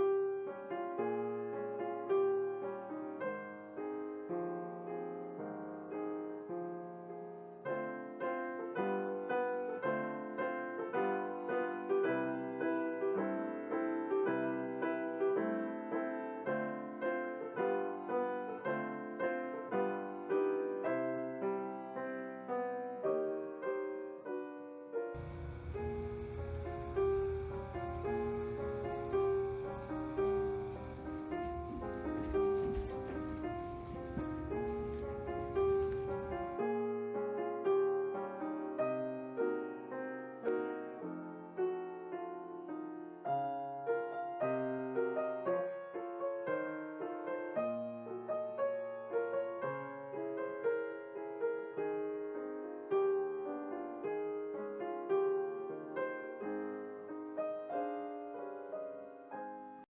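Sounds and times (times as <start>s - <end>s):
solo piano piece: 0.0s - 59.8s
low rumble and hiss: 25.2s - 36.6s.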